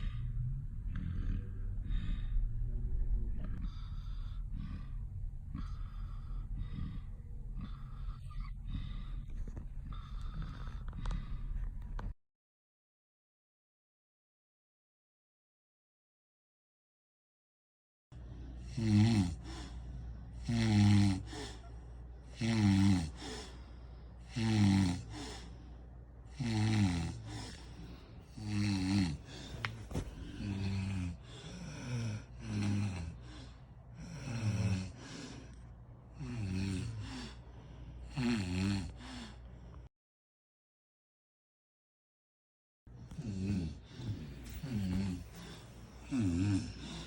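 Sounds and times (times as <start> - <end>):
person snoring: 0.0 - 11.4, 18.2 - 39.5, 43.0 - 47.0
low steady hum: 0.0 - 12.2, 18.2 - 38.2, 42.9 - 47.0.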